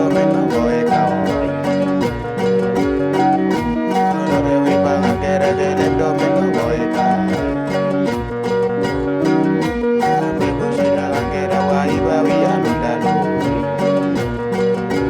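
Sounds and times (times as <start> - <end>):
plucked string instruments: 0.0 - 15.0
steady beat: 0.0 - 15.0.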